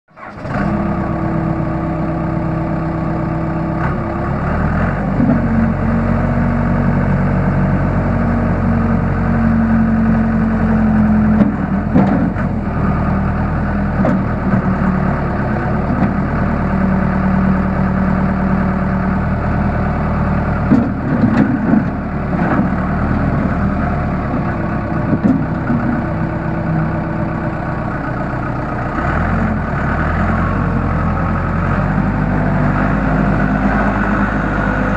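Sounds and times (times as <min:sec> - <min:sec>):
diesel engine running: 0:00.1 - 0:34.9.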